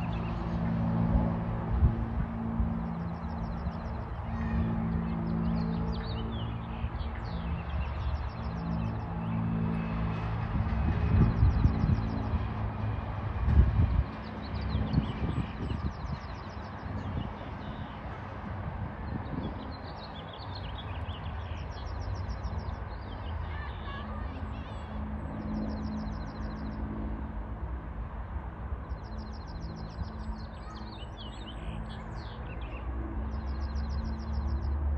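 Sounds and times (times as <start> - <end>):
steady low rumble: 0.0 - 17.8
small birds chirping: 19.0 - 26.9, 28.9 - 34.8.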